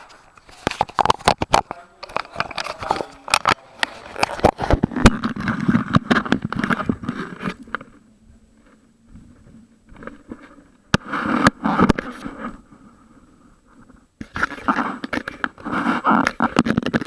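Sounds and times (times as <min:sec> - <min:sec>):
clicks knocks and scraping: 0:00.0 - 0:07.9.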